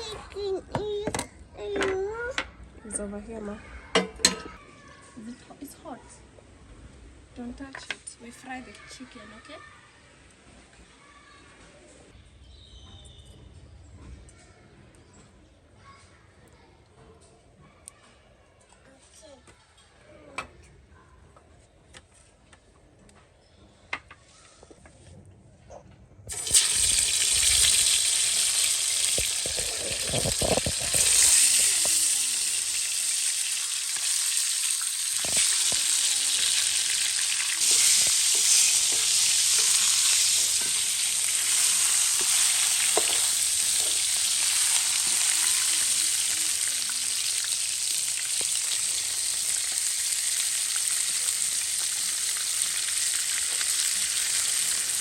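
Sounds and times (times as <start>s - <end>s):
chicken sizzling in hot oil: 26.3s - 55.0s.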